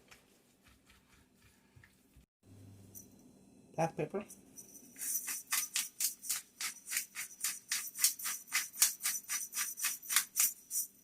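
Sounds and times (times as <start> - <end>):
scratchy pepper grinding strokes: 0.1 - 2.2, 4.7 - 11.0.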